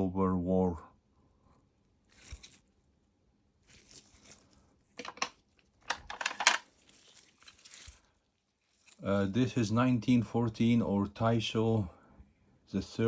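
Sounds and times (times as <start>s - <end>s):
plastic packaging rustling and clicking: 3.7s - 9.0s.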